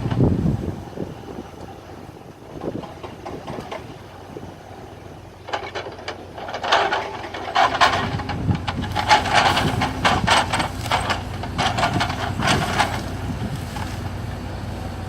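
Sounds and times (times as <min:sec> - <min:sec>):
machine engine running: 0:06.8 - 0:15.0.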